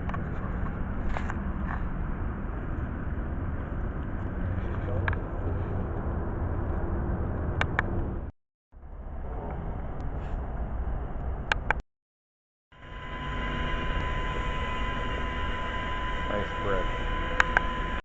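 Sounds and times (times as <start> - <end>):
outdoor rumble and hiss: 0.0 - 11.8, 12.8 - 18.0
thin steady tone: 12.8 - 18.0
sharp clicks: 17.4 - 17.7.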